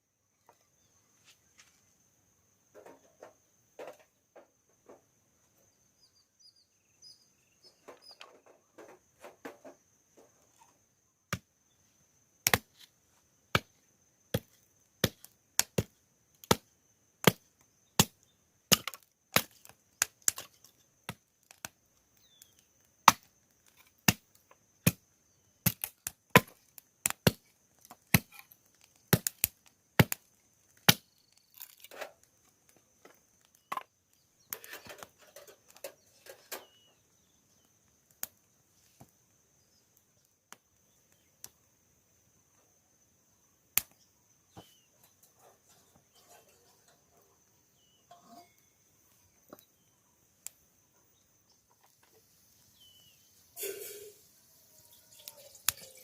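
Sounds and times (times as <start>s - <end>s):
blade chopping on wood: 18.0s - 19.7s.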